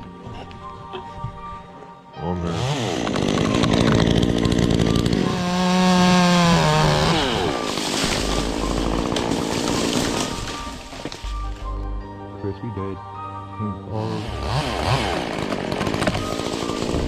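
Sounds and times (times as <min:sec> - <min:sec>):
chainsaw revving: 0:02.5 - 0:11.6, 0:14.0 - 0:17.0.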